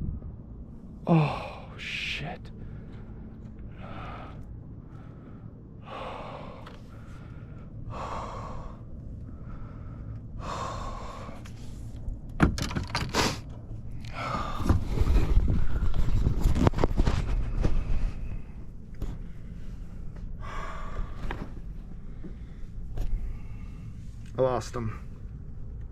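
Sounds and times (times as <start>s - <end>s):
low rumble: 0.0s - 25.9s
man breathing hard: 2.5s - 12.2s, 13.1s - 16.4s, 17.2s - 24.3s.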